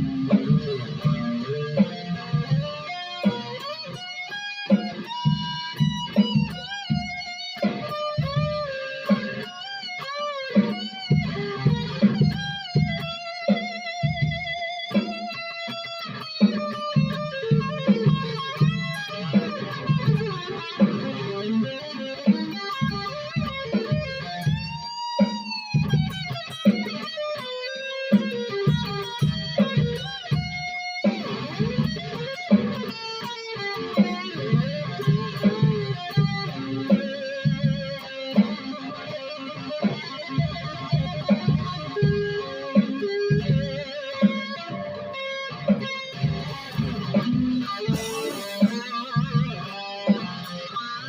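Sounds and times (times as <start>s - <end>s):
electric guitar lead: 0.0s - 51.0s.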